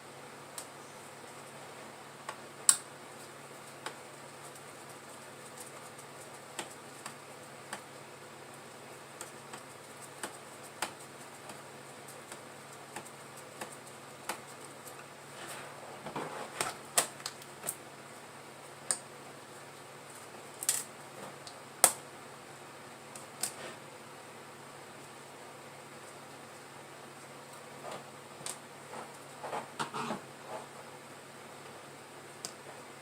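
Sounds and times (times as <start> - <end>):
low steady hum: 0.0 - 33.0.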